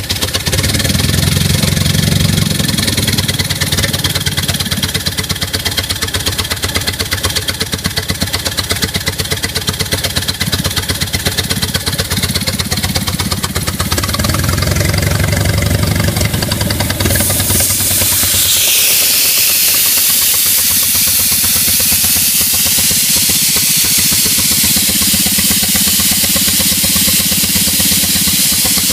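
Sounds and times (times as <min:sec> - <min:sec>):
air compressor engine chugging: 0:00.0 - 0:28.9
hiss of escaping air: 0:16.0 - 0:28.9.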